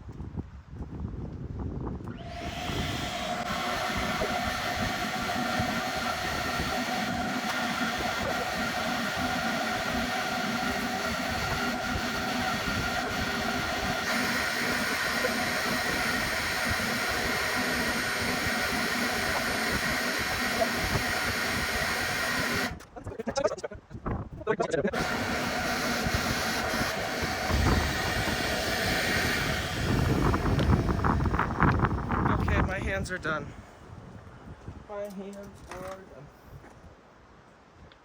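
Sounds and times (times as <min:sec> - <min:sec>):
whining tones: 0:02.0 - 0:33.2
steady hissing rush: 0:02.1 - 0:23.7, 0:24.9 - 0:33.6.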